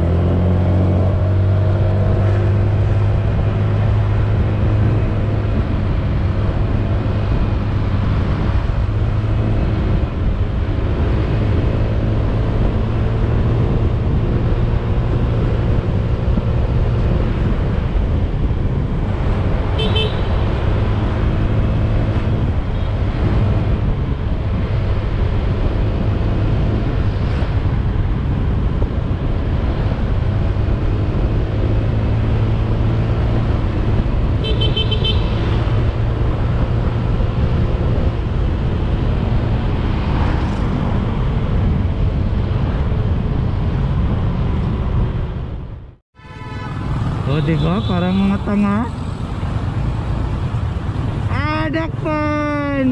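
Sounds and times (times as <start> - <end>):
motorcycle engine rumble: 0.0 - 52.9
road noise: 0.0 - 52.9
vehicle horn beeping: 19.8 - 20.4, 34.4 - 35.4, 46.2 - 48.4.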